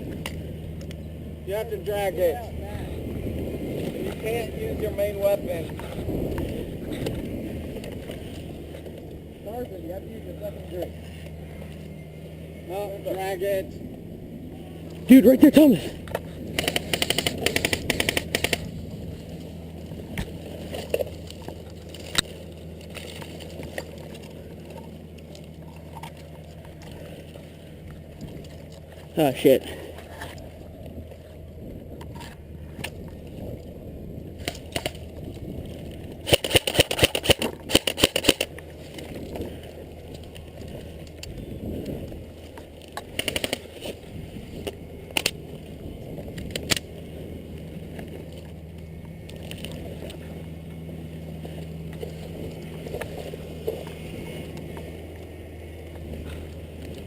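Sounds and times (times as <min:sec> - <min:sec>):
low outdoor background: 0:00.0 - 0:57.0.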